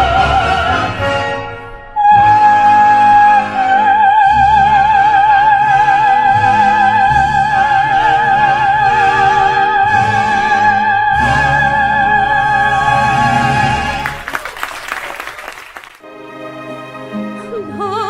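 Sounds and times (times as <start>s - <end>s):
accompaniment chords: 16.0s - 18.0s
soprano singing operatic note: 16.5s - 18.0s.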